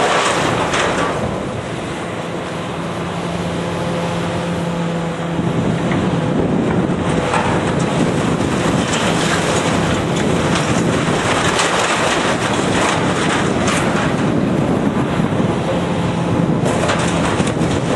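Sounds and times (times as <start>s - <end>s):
metal knocks and scrapes: 0.0s - 1.4s, 6.7s - 14.4s, 16.6s - 17.9s
demolition machine engine hum: 0.0s - 17.9s.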